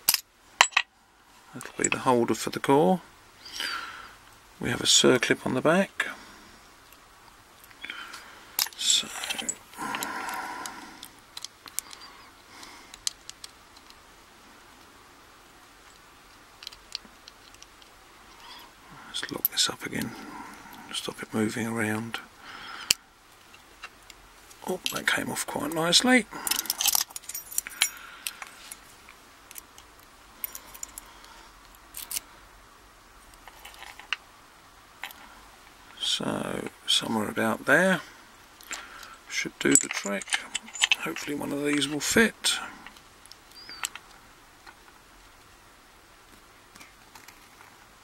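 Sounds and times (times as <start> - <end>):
small metal parts clicking: 0.0 - 0.9, 8.6 - 14.0, 15.8 - 18.6, 25.7 - 28.8, 29.5 - 32.3, 38.6 - 42.2, 42.8 - 44.8.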